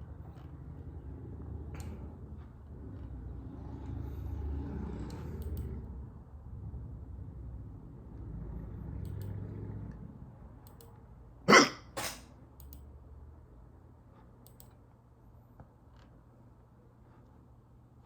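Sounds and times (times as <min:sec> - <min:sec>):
person hiccuping: 0:11.5 - 0:12.0.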